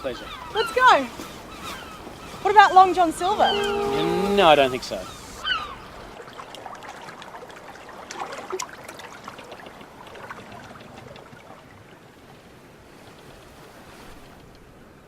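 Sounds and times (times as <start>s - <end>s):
water trickling and lapping: 0.0s - 15.0s
small splashes: 6.1s - 11.7s.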